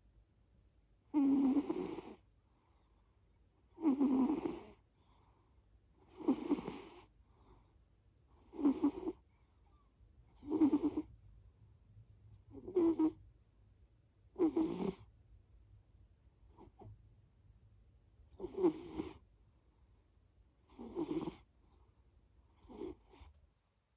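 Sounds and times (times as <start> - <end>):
pet snoring: 1.1 - 2.2, 3.7 - 4.8, 6.0 - 7.1, 8.4 - 9.2, 10.3 - 11.1, 12.5 - 13.2, 14.3 - 15.1, 16.5 - 16.9, 18.3 - 19.2, 20.7 - 21.5, 22.6 - 23.3.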